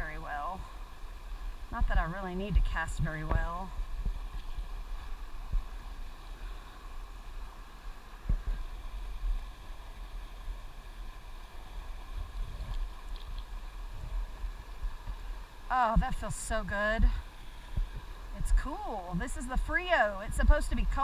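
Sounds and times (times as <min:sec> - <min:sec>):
wind on microphone: 0:01.4 - 0:06.6, 0:08.2 - 0:10.8, 0:11.6 - 0:21.0.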